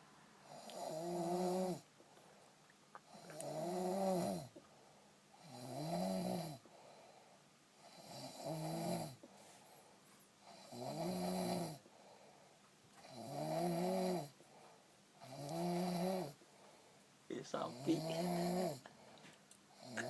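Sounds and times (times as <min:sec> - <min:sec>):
person snoring: 0:00.4 - 0:01.8, 0:03.1 - 0:04.5, 0:10.5 - 0:11.8, 0:13.0 - 0:14.3, 0:15.2 - 0:16.4, 0:17.6 - 0:19.0, 0:19.7 - 0:20.0
quiet breathing: 0:01.5 - 0:05.6, 0:06.5 - 0:08.0, 0:09.0 - 0:10.7, 0:11.5 - 0:13.3, 0:14.2 - 0:20.0.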